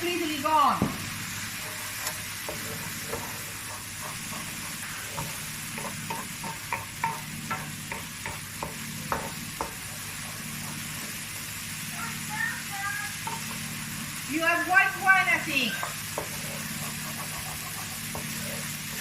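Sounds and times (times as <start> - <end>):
rice and wine sizzling in a pan: 0.0 - 19.0
utensil tapping against a pan: 5.2 - 9.8, 15.8 - 18.4.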